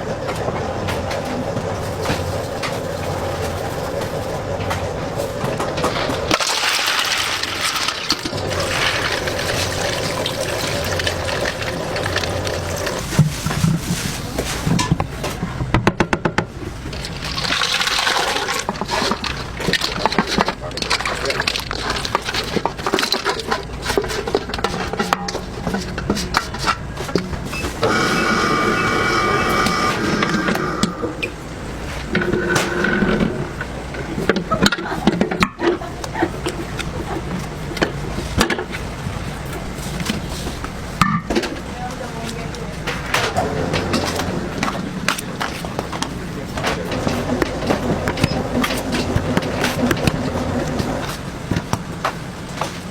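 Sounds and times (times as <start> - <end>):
machinery hum: 0.0 - 52.9
liquid pouring: 6.1 - 13.2, 16.9 - 23.5.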